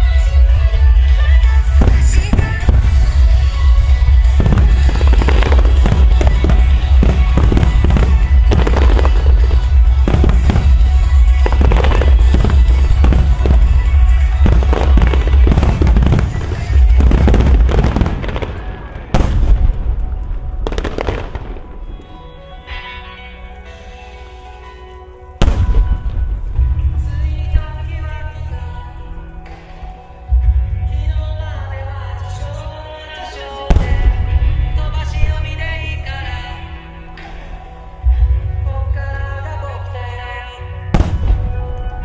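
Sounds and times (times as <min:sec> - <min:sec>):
loud music with heavy bass: 0:00.0 - 0:21.5, 0:25.4 - 0:42.0
firework shells bursting: 0:01.6 - 0:22.6.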